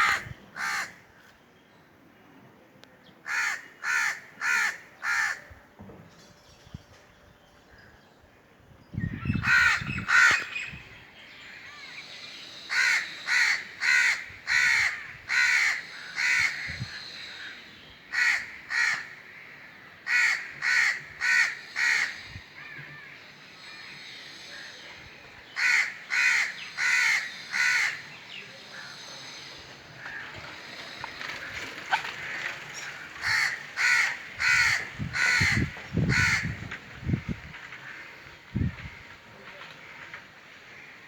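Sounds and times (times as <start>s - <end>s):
crows cawing: 0.0s - 1.3s, 3.2s - 5.5s, 9.4s - 10.5s, 12.7s - 23.2s, 25.6s - 28.1s, 30.0s - 30.4s, 31.3s - 39.2s, 39.8s - 41.0s.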